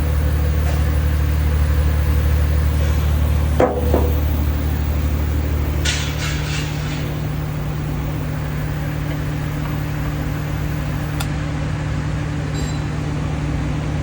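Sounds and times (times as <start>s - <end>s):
diesel engine idling: 0.0s - 11.3s
engine knock: 3.5s - 5.1s.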